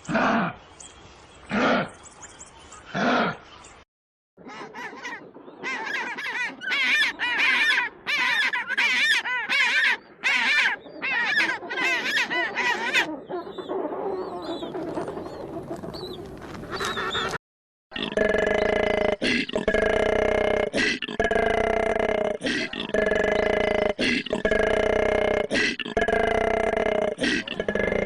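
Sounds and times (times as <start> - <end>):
loud bird-like animal calls: 4.4 - 17.4
faint chirping calls: 9.8 - 17.4.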